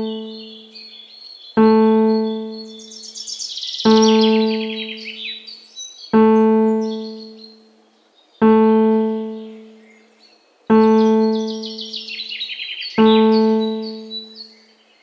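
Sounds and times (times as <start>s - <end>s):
low piano note ringing: 0.0s - 0.6s, 1.6s - 2.8s, 3.9s - 5.2s, 6.2s - 7.4s, 8.4s - 9.8s, 10.7s - 11.9s, 13.0s - 14.3s
bird trills and chirps: 0.0s - 15.0s.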